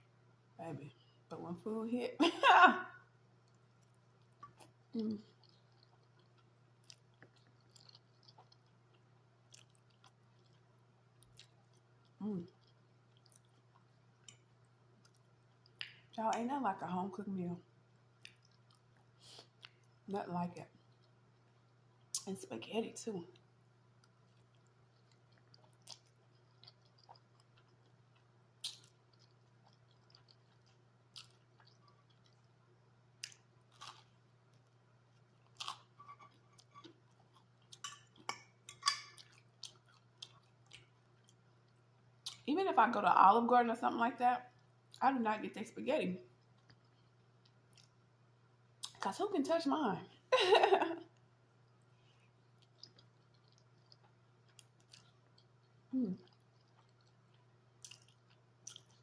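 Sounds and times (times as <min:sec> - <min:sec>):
wet chewing mouth sounds: 0:03.4 - 0:16.1, 0:23.4 - 0:32.6, 0:51.7 - 0:59.0.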